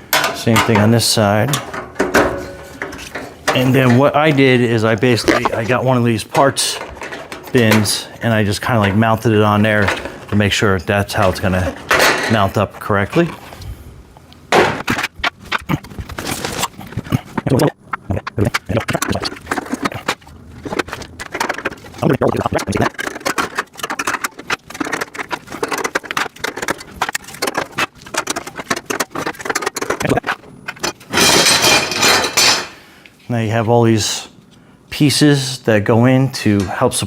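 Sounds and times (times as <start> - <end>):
rattling clatter: 19.1 - 32.6
metal rack parts clinking: 30.8 - 32.7.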